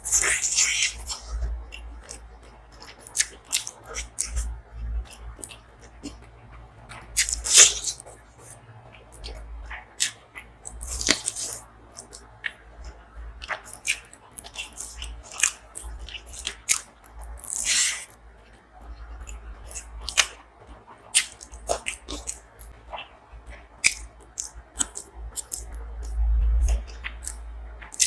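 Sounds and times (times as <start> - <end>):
person chewing crunchy food: 0.0 - 28.0.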